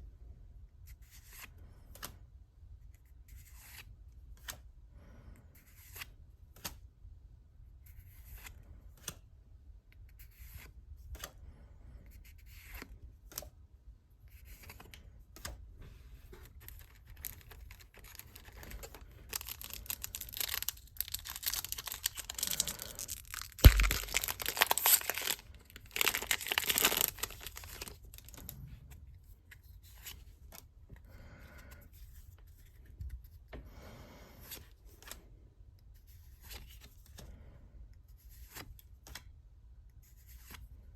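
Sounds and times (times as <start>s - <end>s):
packaging clicks and rustles: 16.6s - 28.6s
wrapping tearing and crinkling: 16.6s - 28.6s.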